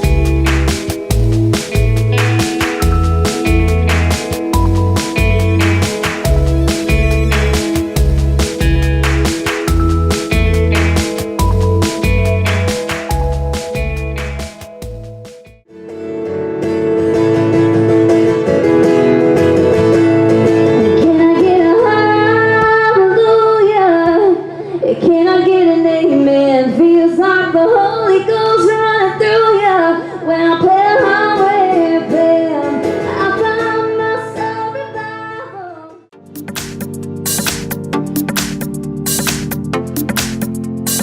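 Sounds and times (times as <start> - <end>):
plucked guitar: 0.0 - 23.0, 31.0 - 35.8
woman singing: 20.9 - 36.1.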